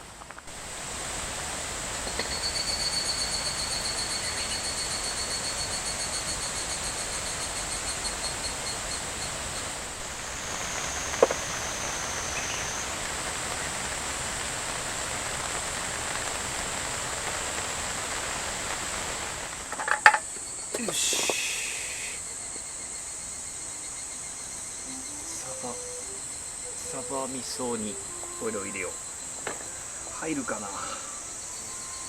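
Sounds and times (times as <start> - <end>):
high-pitched insect trill: 0.5 - 13.9, 19.6 - 32.0
fast pulsing insect trill: 0.5 - 14.0, 19.6 - 32.0.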